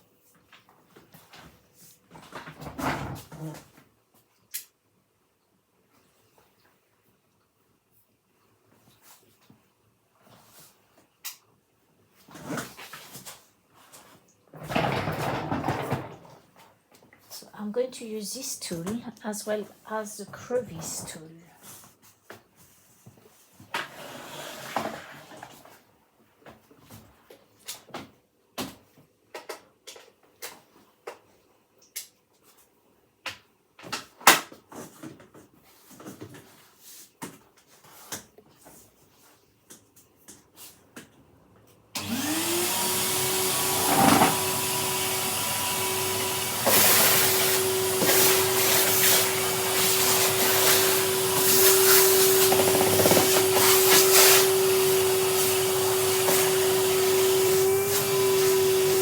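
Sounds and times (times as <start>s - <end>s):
vacuum cleaner motor whine: 42.0s - 59.0s.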